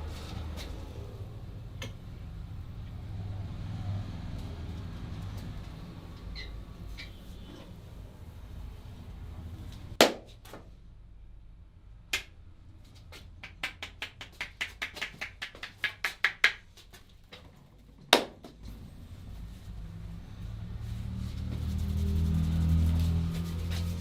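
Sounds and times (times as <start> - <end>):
hands slapping a head: 10.0 - 10.4, 12.1 - 12.3, 13.0 - 17.1, 18.1 - 18.6
rapid taps on a head: 13.1 - 17.1.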